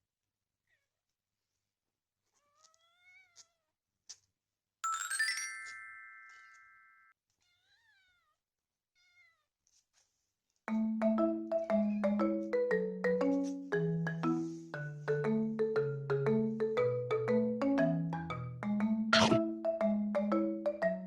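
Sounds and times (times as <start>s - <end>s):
marimba music: 4.8s - 6.1s, 10.7s - 21.0s
bright chime: 4.8s - 7.1s
kitten meowing softly: 7.4s - 8.4s.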